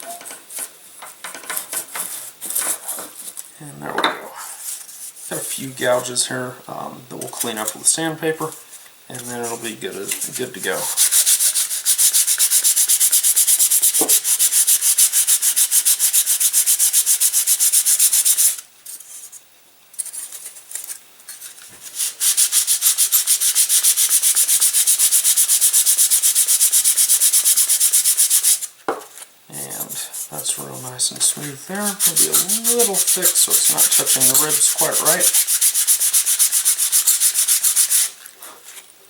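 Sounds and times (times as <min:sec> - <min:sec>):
sandpaper rubbing wood: 0:09.2 - 0:18.6, 0:21.8 - 0:28.7, 0:29.5 - 0:38.3.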